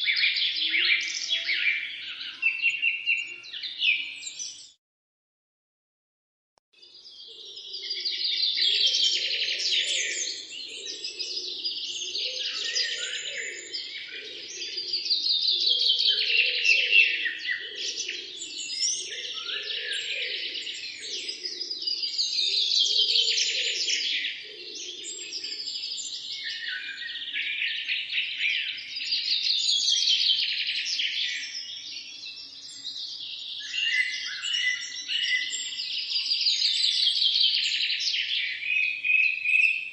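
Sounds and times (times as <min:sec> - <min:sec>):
songbirds chirping and singing: 0:00.0 - 0:04.8, 0:06.8 - 0:39.9.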